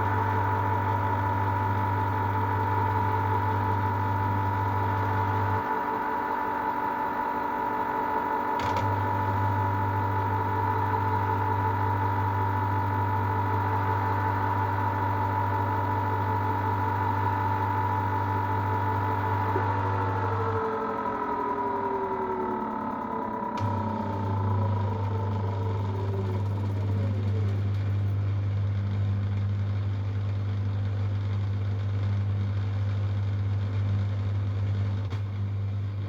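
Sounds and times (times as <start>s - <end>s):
washer-dryer motor whine: 0.0s - 36.0s
low hum: 18.0s - 29.2s.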